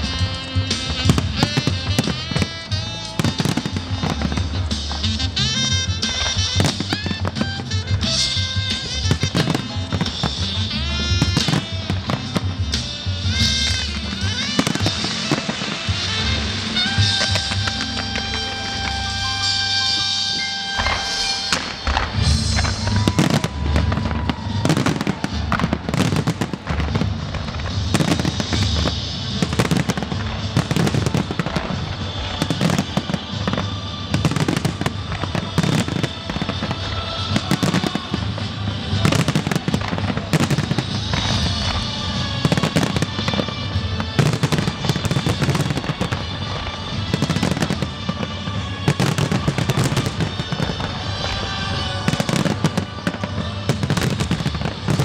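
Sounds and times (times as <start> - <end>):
firework shell bursts: 0.0 - 55.0
music playing: 0.0 - 55.0.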